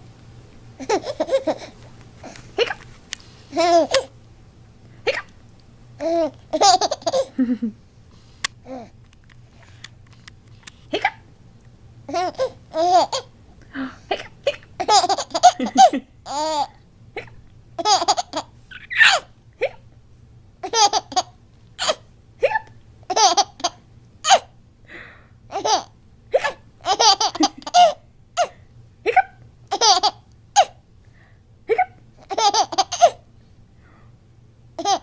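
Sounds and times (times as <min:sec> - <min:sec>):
baby laughing: 0:00.8 - 0:01.8, 0:02.6 - 0:02.8, 0:03.5 - 0:04.1, 0:06.0 - 0:07.6, 0:12.1 - 0:13.3, 0:14.1 - 0:19.8, 0:20.6 - 0:24.5, 0:25.5 - 0:28.5, 0:29.1 - 0:30.8, 0:31.7 - 0:33.2, 0:34.8 - 0:35.0.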